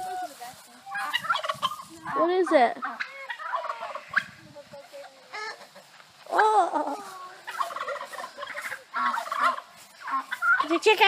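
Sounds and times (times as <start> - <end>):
chickens clucking: 0.0 - 11.0
turkeys gobbling: 0.0 - 11.0.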